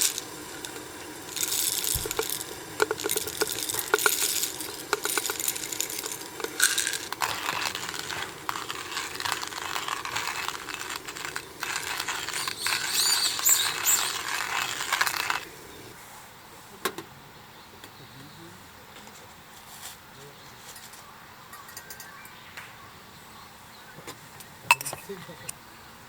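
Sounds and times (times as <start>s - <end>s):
hand coffee mill grinding beans: 0.0s - 15.9s.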